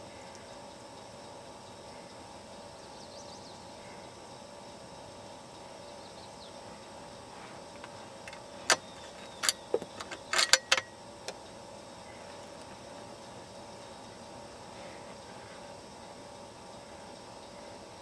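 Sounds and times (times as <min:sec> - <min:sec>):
background hiss: 0:00.0 - 0:18.0
metallic clatter: 0:08.3 - 0:10.9.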